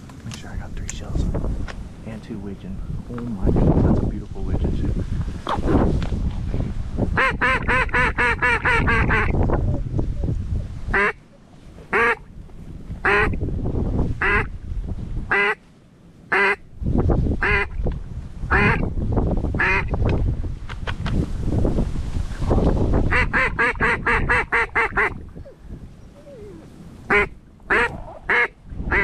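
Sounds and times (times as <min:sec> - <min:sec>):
low rumble: 0:00.0 - 0:07.1
duck quacking: 0:07.2 - 0:09.4, 0:10.9 - 0:11.2, 0:11.9 - 0:12.2, 0:18.5 - 0:18.8, 0:27.1 - 0:29.0.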